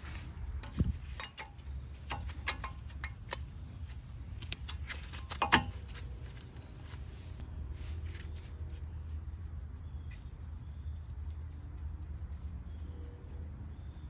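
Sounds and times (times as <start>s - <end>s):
sharp metallic taps: 0.6s - 3.5s, 5.3s - 5.8s.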